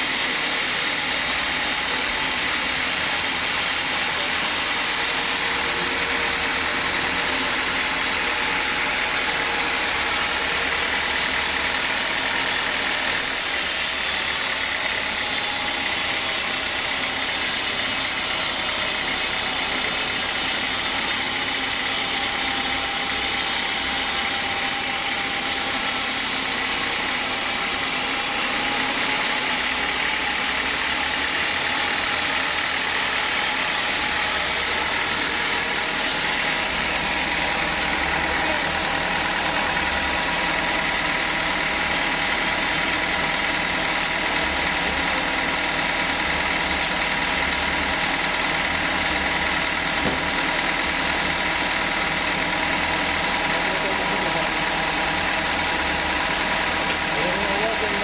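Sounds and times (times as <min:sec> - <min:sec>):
sawmill saw whining: 0:00.0 - 0:58.0.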